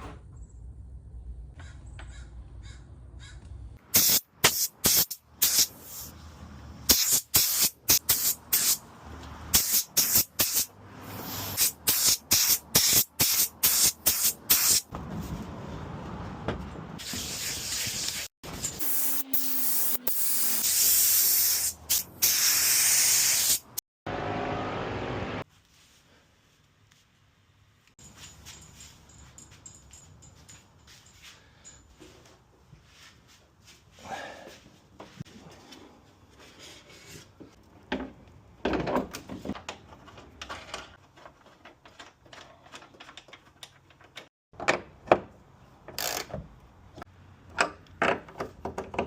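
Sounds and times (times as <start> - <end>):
hissing spray bursts: 3.9 - 6.1, 6.9 - 8.8, 9.5 - 14.8, 17.0 - 23.8.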